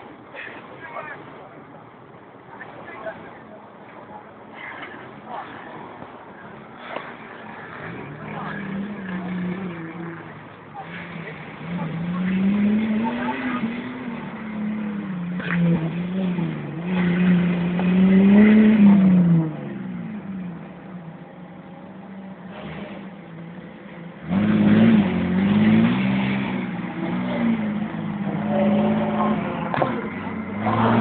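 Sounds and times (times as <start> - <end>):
off-road vehicle engine revving: 6.5 - 31.0.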